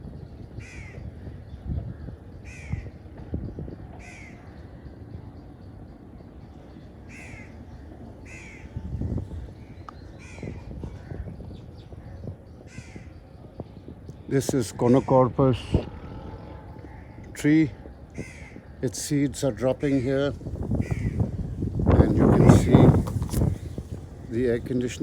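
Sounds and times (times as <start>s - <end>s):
crows cawing: 0.6s - 1.0s, 2.4s - 3.0s, 4.0s - 4.6s, 7.0s - 11.3s, 12.0s - 13.2s, 14.8s - 18.8s, 19.8s - 23.7s
low rumble: 15.1s - 18.8s.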